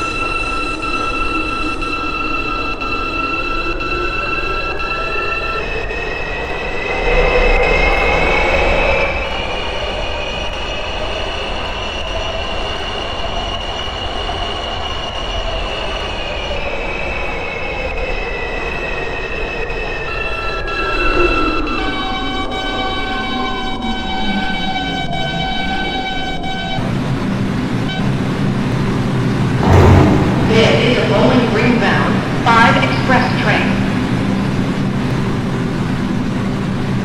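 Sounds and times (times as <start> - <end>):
subway train motors whining: 0.0 - 37.0
wheels rumbling on track: 22.8 - 37.0.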